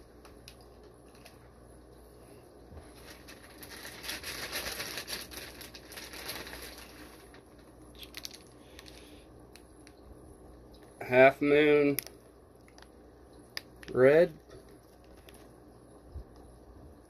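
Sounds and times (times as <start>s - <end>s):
plastic bags crinkling: 2.8s - 9.1s, 14.7s - 15.5s.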